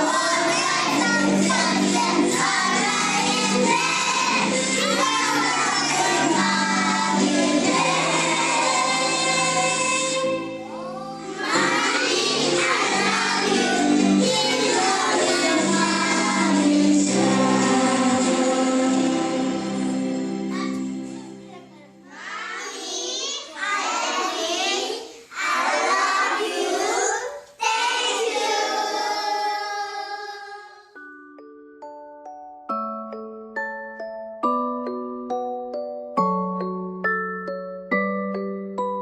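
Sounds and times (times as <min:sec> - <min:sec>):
children singing: 0:00.0 - 0:19.9, 0:22.1 - 0:31.0
musical accompaniment: 0:00.0 - 0:23.0, 0:30.4 - 0:39.0.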